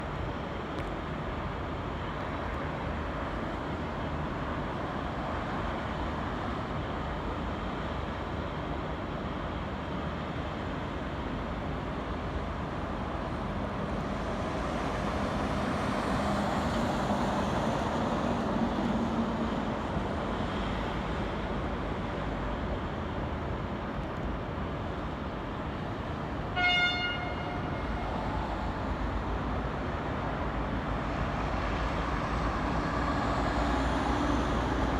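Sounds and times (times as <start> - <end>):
locomotive engines and wheels rumbling: 0.0 - 34.9
train horn toot: 26.5 - 28.2.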